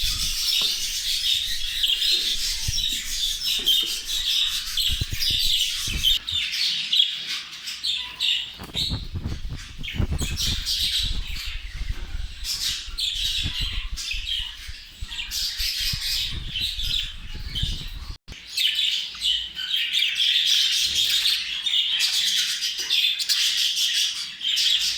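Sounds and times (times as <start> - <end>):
budgerigars chattering: 0.0 - 6.8.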